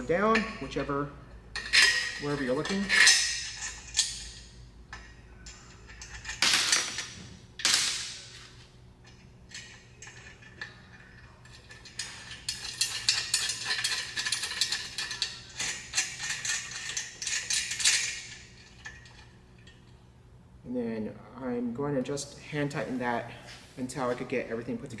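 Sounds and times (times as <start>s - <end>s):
metallic clicking and rattling: 9.0s - 19.8s.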